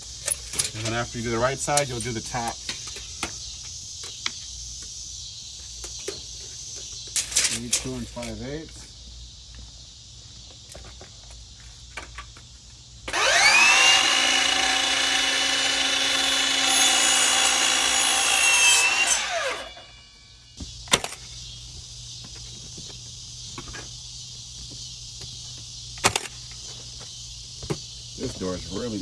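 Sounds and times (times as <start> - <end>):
electric power saw whining: 13.0 - 21.2.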